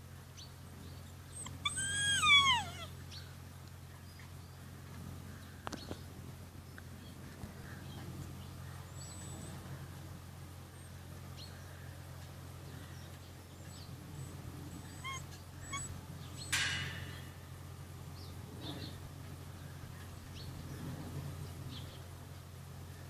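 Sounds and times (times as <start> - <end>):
steady low hum: 0.0 - 23.0
puppies squeaking and yipping: 1.3 - 3.0, 13.7 - 16.8.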